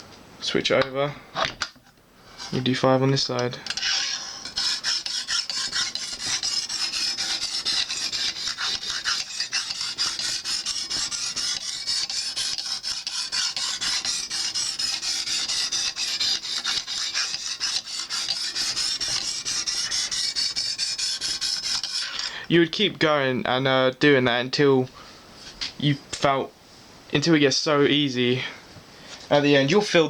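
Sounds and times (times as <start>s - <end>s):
hone stone scraping knife edge: 2.3s - 2.8s, 3.6s - 22.3s.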